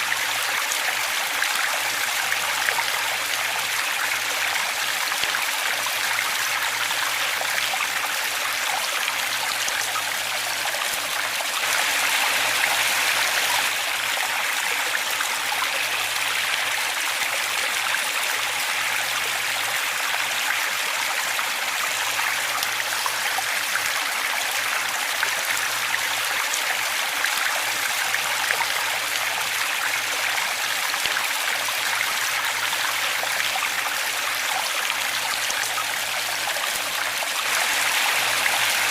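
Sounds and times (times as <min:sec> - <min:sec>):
waterfall rushing: 0:11.4 - 0:17.2, 0:36.8 - 0:38.9.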